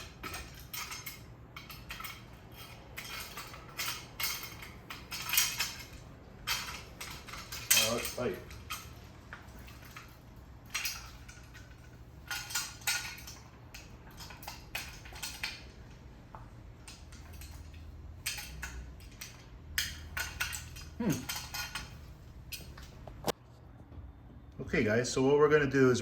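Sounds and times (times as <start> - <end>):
metal parts clanking: 0.0 - 23.1
light metal rattles: 0.0 - 23.4.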